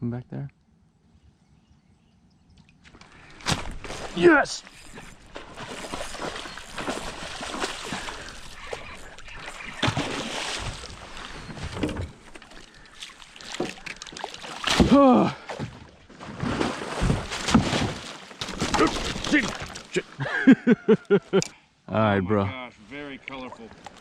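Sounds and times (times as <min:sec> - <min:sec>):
water splashing: 0:02.8 - 0:20.2.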